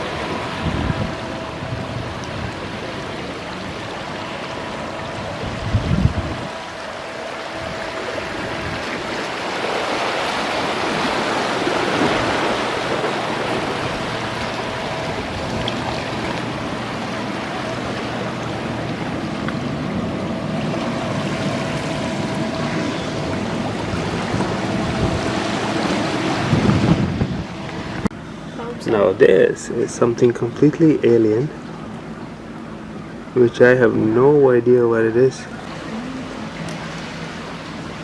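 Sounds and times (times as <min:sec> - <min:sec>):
wind on microphone: 0:00.0 - 0:03.2, 0:04.6 - 0:29.2
surf washing over rocks: 0:00.0 - 0:28.1, 0:33.6 - 0:38.0.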